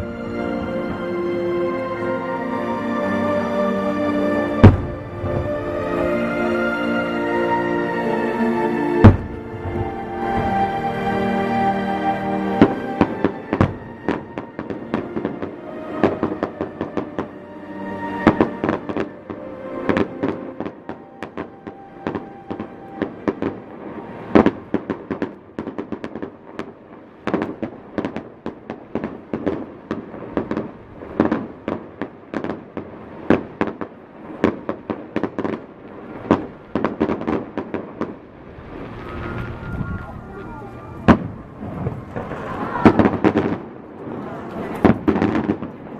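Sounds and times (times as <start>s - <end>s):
music playing: 0.0s - 24.9s, 38.6s - 43.6s
fireworks bangs and crackling: 4.5s - 6.7s, 9.0s - 11.4s, 12.3s - 17.4s, 18.2s - 45.9s.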